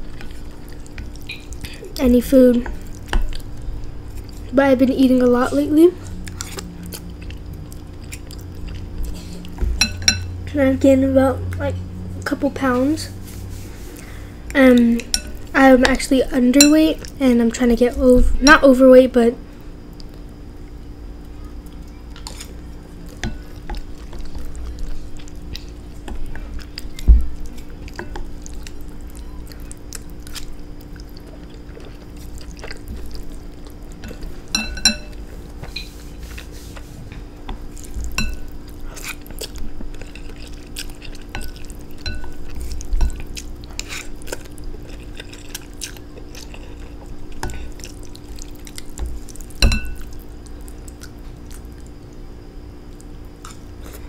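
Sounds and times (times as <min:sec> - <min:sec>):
wet chewing of noodles: 0:00.0 - 0:01.9, 0:06.0 - 0:10.0, 0:19.9 - 0:54.0
faint steady hum: 0:00.0 - 0:54.0
utensil clinking against dish: 0:34.0 - 0:35.9.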